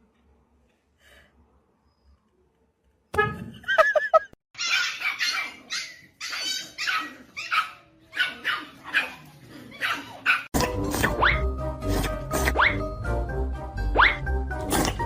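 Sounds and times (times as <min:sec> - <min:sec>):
dog barking: 0:04.6 - 0:09.2, 0:09.8 - 0:10.5
dog yipping: 0:04.6 - 0:09.2, 0:09.8 - 0:10.5.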